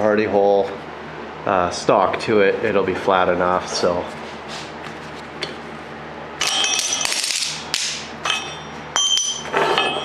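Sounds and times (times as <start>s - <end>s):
steel pieces clanking: 6.4s - 10.0s.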